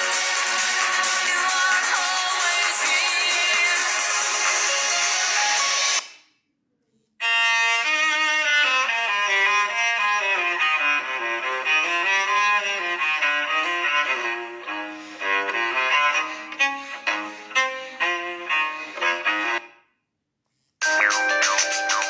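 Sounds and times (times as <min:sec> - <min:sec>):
phone ringtone melody: 0:20.8 - 0:22.0.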